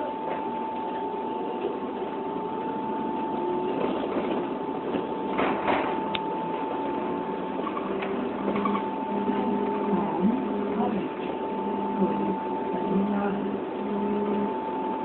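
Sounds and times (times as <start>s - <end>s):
constant tone: 0.0s - 15.0s.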